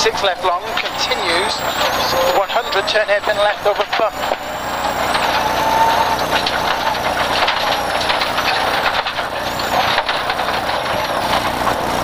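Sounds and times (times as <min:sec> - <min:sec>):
rally car engine running hard: 0:00.0 - 0:12.0
tyre and gravel noise: 0:00.0 - 0:12.0
stones striking car underside: 0:02.4 - 0:12.0.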